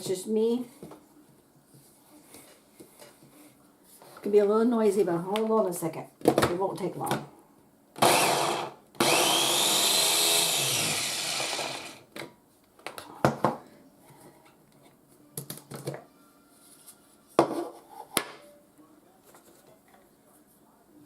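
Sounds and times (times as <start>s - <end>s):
food chopper motor whining: 8.0s - 12.0s.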